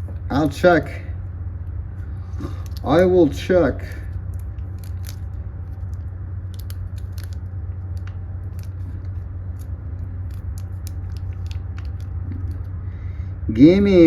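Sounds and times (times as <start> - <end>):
steady low hum: 0.0 - 14.0
plastic sleeve clicks and crinkles: 2.4 - 2.9, 3.9 - 12.7.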